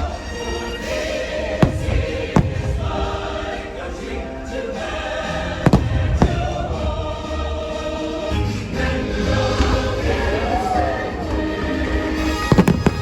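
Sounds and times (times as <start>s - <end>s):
choir singing: 0.0s - 13.0s
firework bursts: 0.9s - 3.8s, 5.6s - 7.1s, 12.3s - 13.0s.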